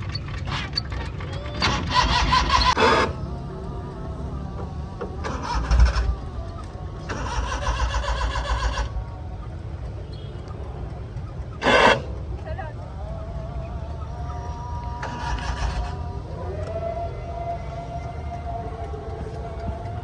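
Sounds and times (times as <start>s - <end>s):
car engine cranking: 0.0s - 2.8s.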